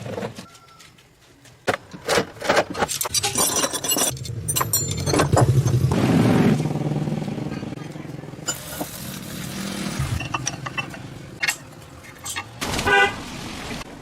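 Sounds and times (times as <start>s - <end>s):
metal parts clinking and scraping: 2.0s - 5.8s, 10.2s - 12.6s.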